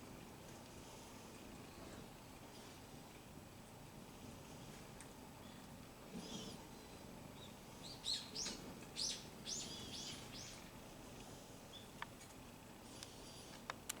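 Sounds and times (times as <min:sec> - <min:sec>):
small birds chirping: 0:07.3 - 0:10.7.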